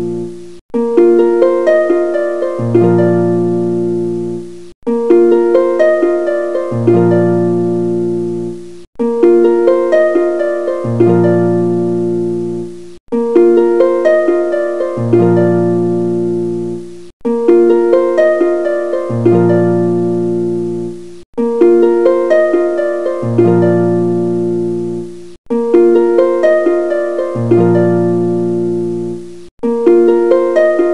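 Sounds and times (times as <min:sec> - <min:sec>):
music of plucked notes: 0:00.0 - 0:30.9.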